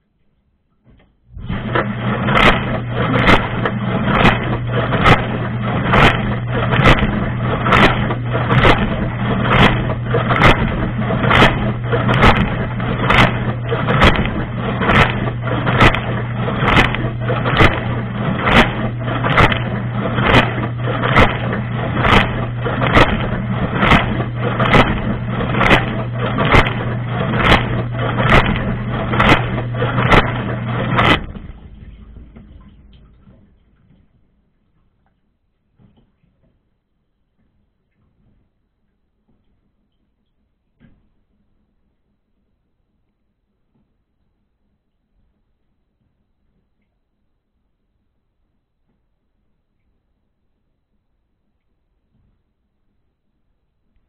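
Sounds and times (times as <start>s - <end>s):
dishwasher pump hum: 0.8s - 36.6s
water jet slapping: 1.4s - 35.2s
spraying water: 1.5s - 33.5s.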